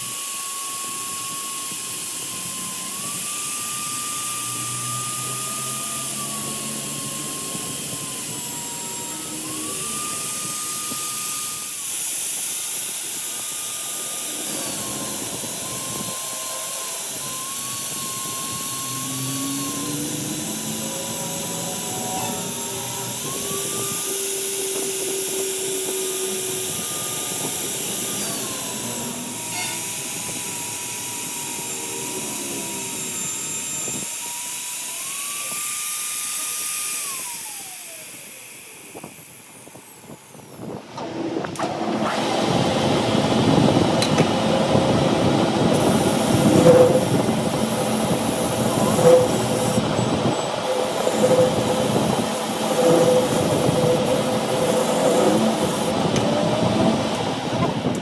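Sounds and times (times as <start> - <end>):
machine motor whine: 0.0 - 58.0
rough machining noise: 0.0 - 58.0.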